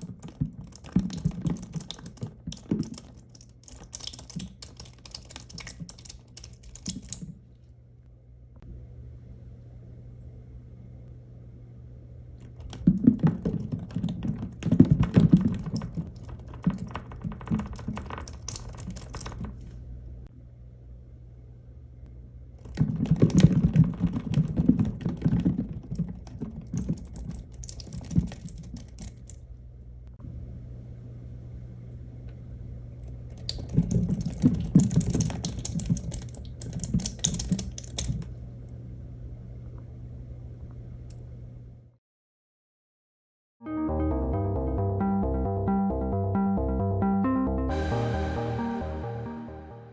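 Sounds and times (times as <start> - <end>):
steady low hum: 0.0 - 42.0
toy balls rattling and clicking: 12.5 - 19.7.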